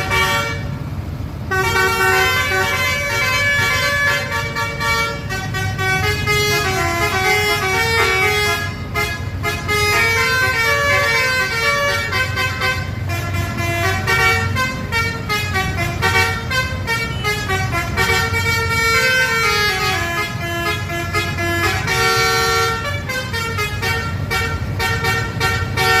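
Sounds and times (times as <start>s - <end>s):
bus engine rumble: 0.0s - 26.0s
bus musical horn tune: 0.0s - 26.0s.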